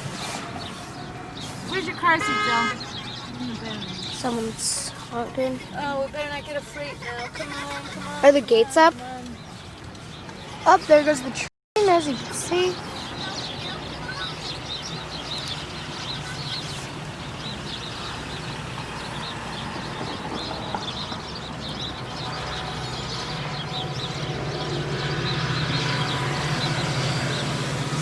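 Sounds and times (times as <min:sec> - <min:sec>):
train rumbling past: 0:11.8 - 0:28.0.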